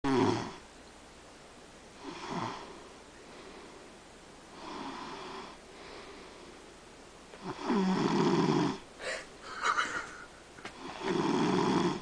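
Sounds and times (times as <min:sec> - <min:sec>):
rasping snores: 0:00.1 - 0:00.6, 0:02.0 - 0:02.7, 0:04.6 - 0:05.6, 0:07.4 - 0:08.8, 0:10.8 - 0:12.0.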